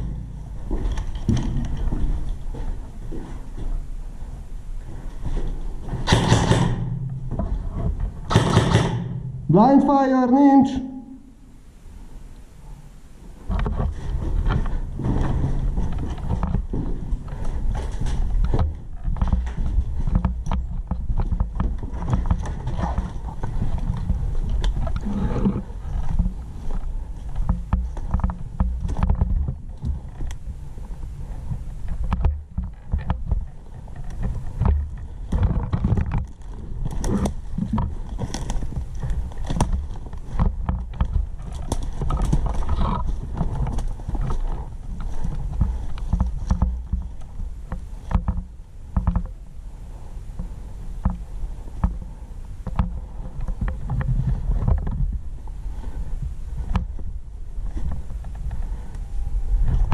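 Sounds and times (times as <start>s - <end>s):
knocking and thumping handling noise: 0.0s - 3.8s, 31.5s - 49.3s
footsteps: 0.0s - 9.8s, 13.2s - 49.3s.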